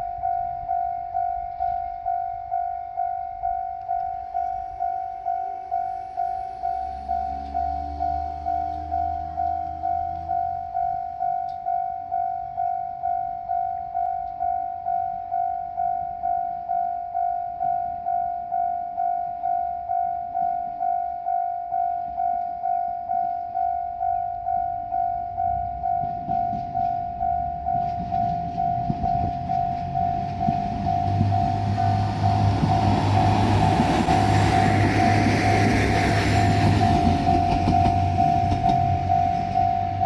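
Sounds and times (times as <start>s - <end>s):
train rumble and wheel clicks: 0.0s - 14.6s, 24.3s - 40.0s
level-crossing warning bell: 0.0s - 40.0s.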